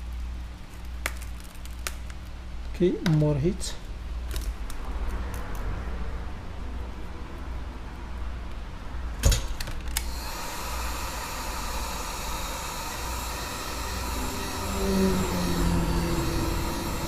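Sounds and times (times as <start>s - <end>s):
heat gun blowing: 10.0s - 17.0s.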